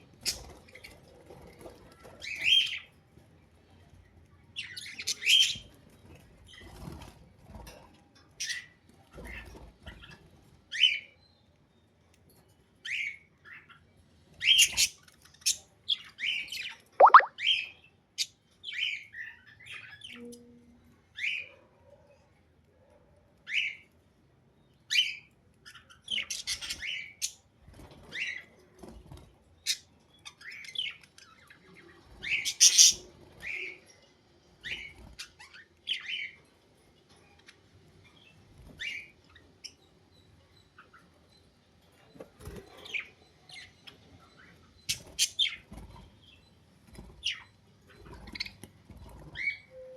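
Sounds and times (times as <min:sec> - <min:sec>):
budgerigars chirping and squawking: 0:32.3 - 0:33.7.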